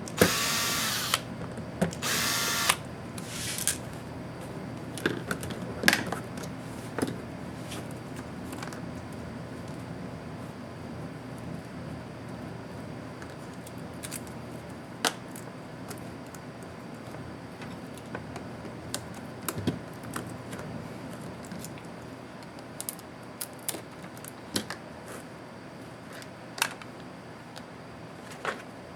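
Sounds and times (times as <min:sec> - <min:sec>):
steady low hum: 0:00.0 - 0:13.1.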